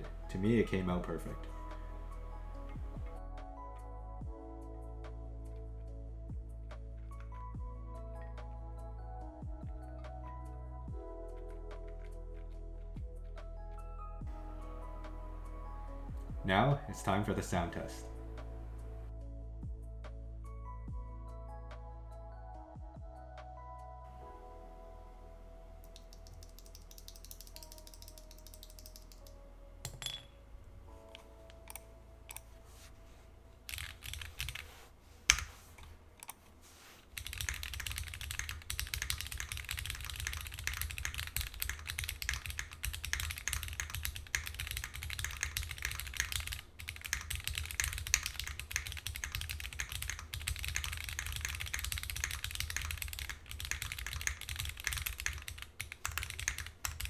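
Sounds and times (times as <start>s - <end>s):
typing on mechanical keyboard: 25.9s - 29.4s, 33.7s - 34.7s, 35.3s - 35.6s, 37.2s - 57.0s.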